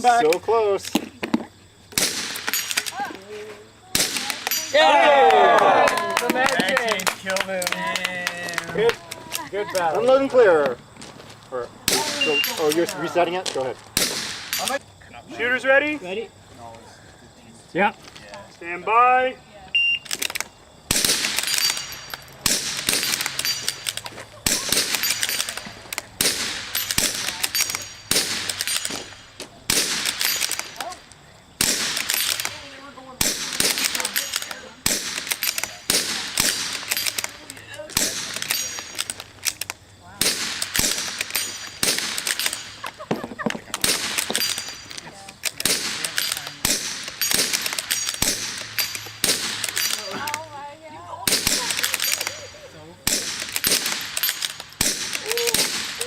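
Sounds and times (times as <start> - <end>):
rifle shots: 1.9 - 2.9, 14.0 - 14.6, 20.1 - 30.8, 31.6 - 37.4, 38.0 - 39.6, 40.2 - 42.8, 43.8 - 44.8, 45.5 - 50.1, 51.3 - 52.4, 53.0 - 56.0
bullet clanging on steel: 2.1 - 3.0, 4.0 - 4.8, 11.9 - 13.1, 14.0 - 14.8, 20.1 - 31.0, 31.6 - 32.6, 33.2 - 50.5, 51.3 - 56.0
smaller cracks: 20.0 - 43.0
steel plates ringing: 21.4 - 22.4, 23.0 - 24.0, 26.5 - 29.4.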